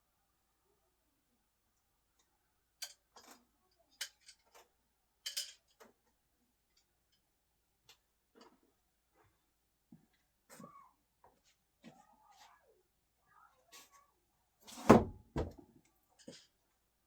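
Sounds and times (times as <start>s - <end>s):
screwdrivers clicking and knocking: 5.3s - 6.0s.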